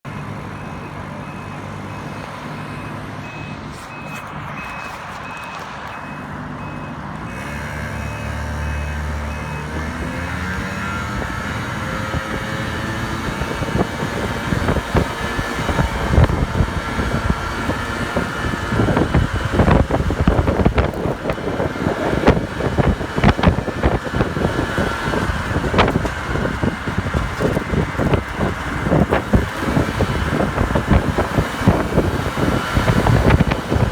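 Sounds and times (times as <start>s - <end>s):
moped engine revving: 7.2s - 33.9s
wind buffeting microphone: 9.2s - 33.9s.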